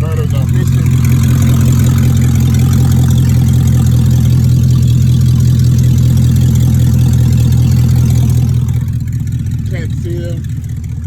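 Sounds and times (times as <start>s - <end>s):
car engine idling loud exhaust: 0.0s - 11.0s.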